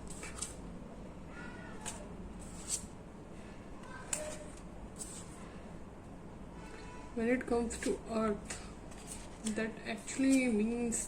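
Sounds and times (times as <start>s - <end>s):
cards swishing and tapping: 0.0s - 0.6s.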